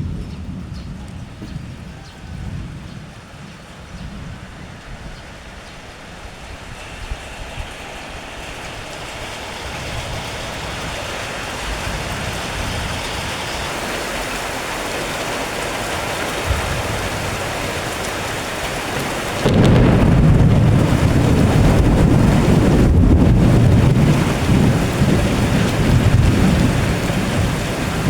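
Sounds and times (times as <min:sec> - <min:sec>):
deep rumble of thunder: 0:00.0 - 0:13.8, 0:15.7 - 0:28.0
heavy rain falling: 0:07.6 - 0:28.0.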